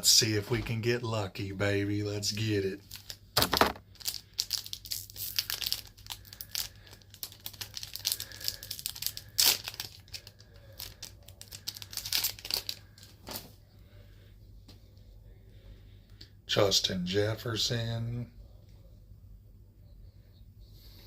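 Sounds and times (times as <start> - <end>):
foil wrapper tearing and crinkling: 2.8 - 13.1.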